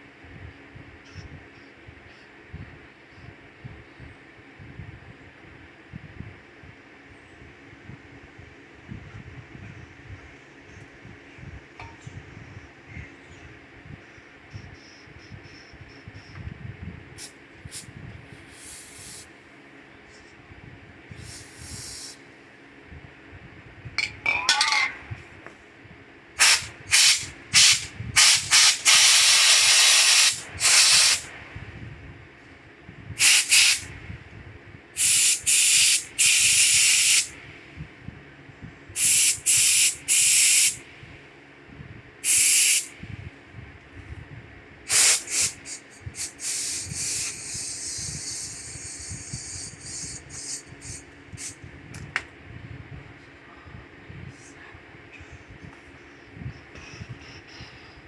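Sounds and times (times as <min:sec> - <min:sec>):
pressurized spray hissing: 0:18.5 - 0:19.2, 0:21.2 - 0:22.2, 0:26.4 - 0:31.2, 0:33.2 - 0:33.8, 0:35.0 - 0:37.3, 0:42.3 - 0:42.9, 0:44.9 - 0:51.5.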